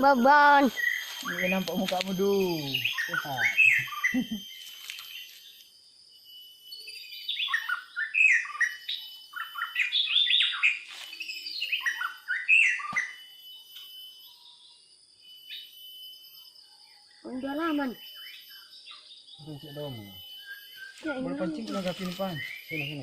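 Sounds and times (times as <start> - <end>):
faint high-pitched drone: 0.0 - 23.0
songbirds chirping: 0.2 - 15.8, 16.6 - 23.0.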